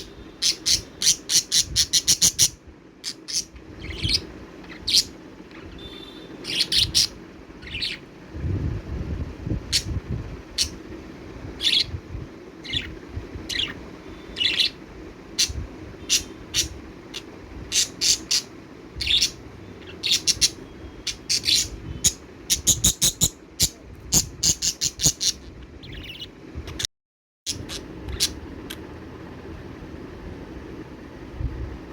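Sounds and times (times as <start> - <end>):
budgerigars chirping: 0.0 - 8.0, 10.6 - 10.8, 11.6 - 11.9, 12.6 - 14.8, 15.4 - 26.3, 27.5 - 28.4.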